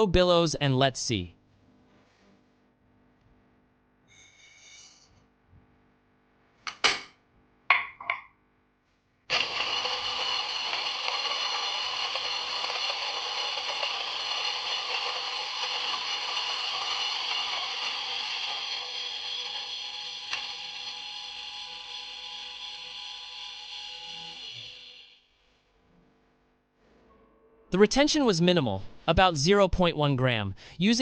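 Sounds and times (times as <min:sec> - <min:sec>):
coffee grinder whirring: 0:09.3 - 0:25.2.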